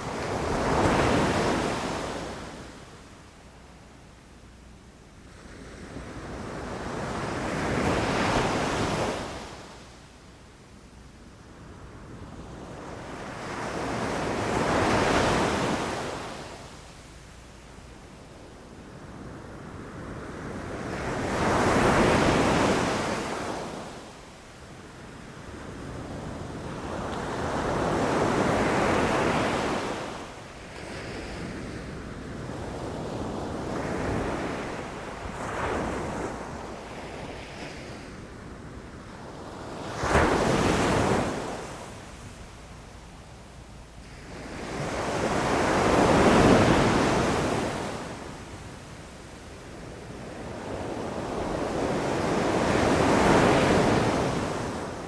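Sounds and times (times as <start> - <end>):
ocean waves breaking: 26.3 - 38.4.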